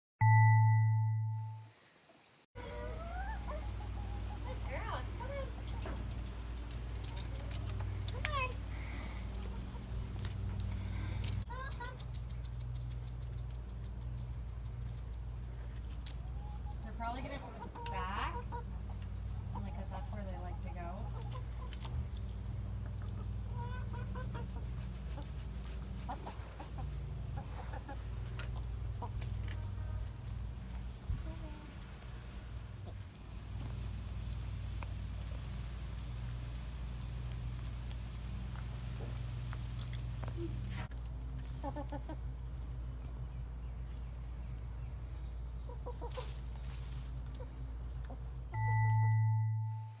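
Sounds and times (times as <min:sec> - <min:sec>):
chickens clucking: 0:02.6 - 0:48.5.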